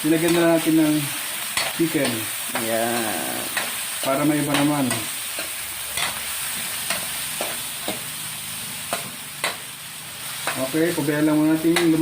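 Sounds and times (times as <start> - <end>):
meat sizzling in hot oil: 0.0 - 12.0.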